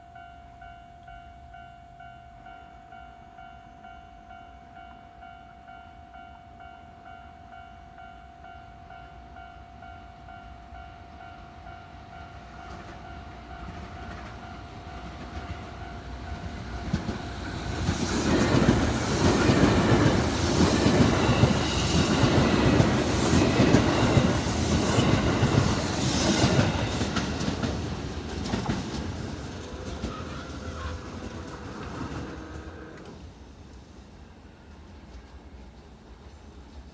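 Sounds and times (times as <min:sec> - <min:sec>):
electric train passing: 0:00.2 - 0:36.9
wheels clacking over rail joints: 0:12.6 - 0:33.4.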